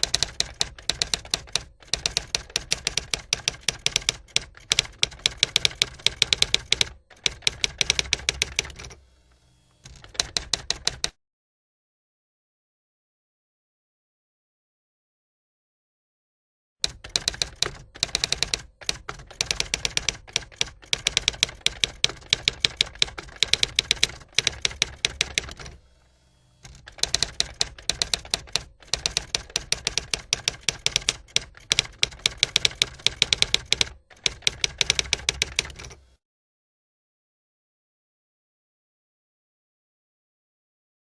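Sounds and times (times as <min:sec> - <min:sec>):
rapid keyboard typing: 0:00.0 - 0:09.0, 0:09.9 - 0:11.2, 0:16.8 - 0:25.8, 0:26.6 - 0:36.0.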